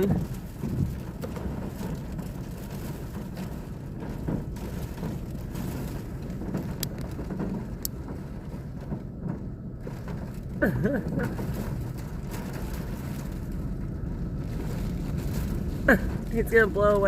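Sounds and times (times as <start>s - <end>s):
storm wind and rain: 0.0s - 17.0s.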